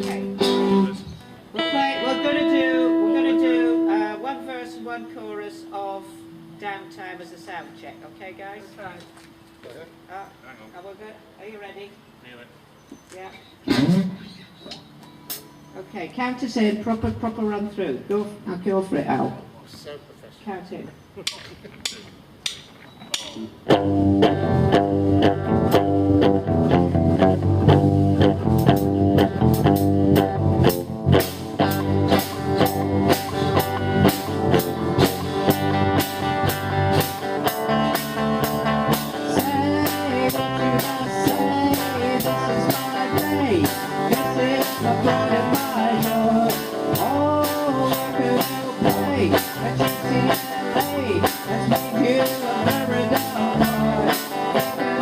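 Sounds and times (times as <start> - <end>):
rock band playing: 0.0 - 10.2, 14.8 - 15.8, 23.2 - 55.0
lead vocal singing: 31.5 - 33.8, 38.8 - 55.0.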